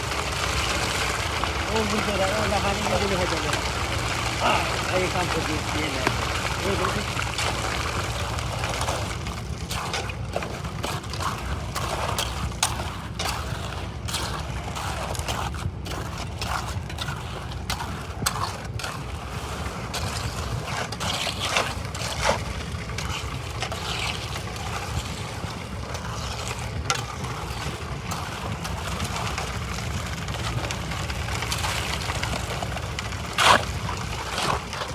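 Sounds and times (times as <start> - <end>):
machinery humming: 0.0 - 9.2.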